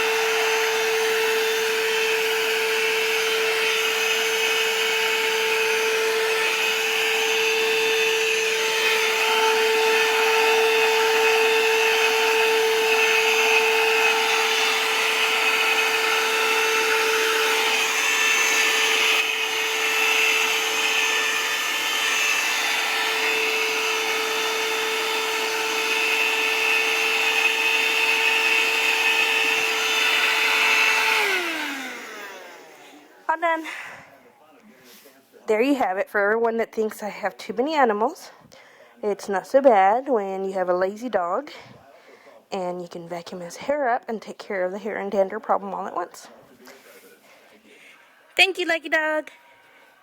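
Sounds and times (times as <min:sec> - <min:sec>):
vacuum cleaner running: 0:00.0 - 0:34.0.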